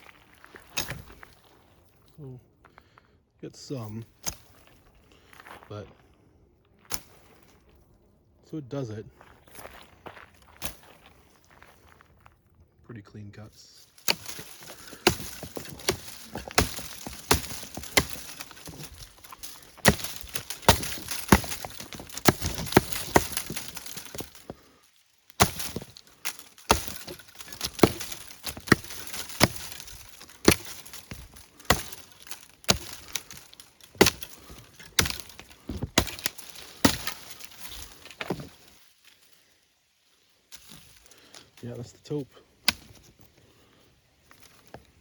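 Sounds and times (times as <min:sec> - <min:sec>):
knife chopping wood: 0:14.0 - 0:24.7, 0:25.3 - 0:38.7, 0:42.6 - 0:43.2.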